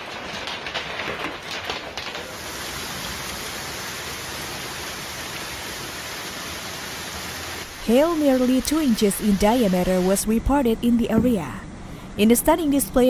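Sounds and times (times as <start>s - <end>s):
hailstones clattering: 0.0s - 9.1s
heavy hail and rain hissing: 0.0s - 10.2s.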